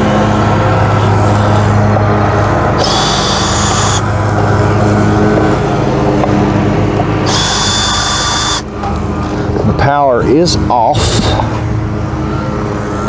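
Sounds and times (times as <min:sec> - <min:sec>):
lawn mower engine running: 0:00.0 - 0:13.0
short high-pitched whines: 0:02.8 - 0:04.1, 0:07.3 - 0:08.7.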